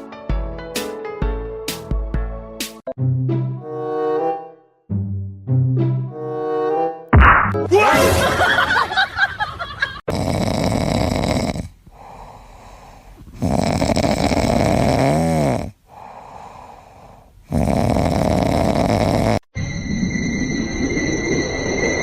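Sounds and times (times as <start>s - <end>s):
pet snoring: 10.1s - 16.5s, 17.4s - 19.5s.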